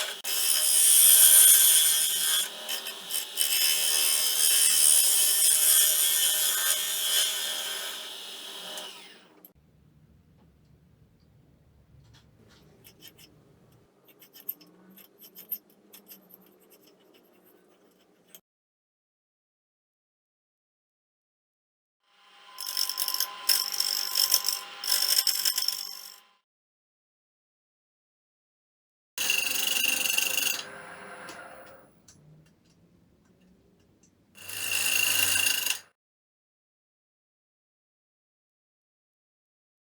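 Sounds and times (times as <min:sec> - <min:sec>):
lathe tool cutting wood: 0:00.0 - 0:09.2, 0:29.3 - 0:32.2, 0:33.0 - 0:35.8
low hum: 0:09.6 - 0:13.9
faint scratching with clicks: 0:09.6 - 0:18.4.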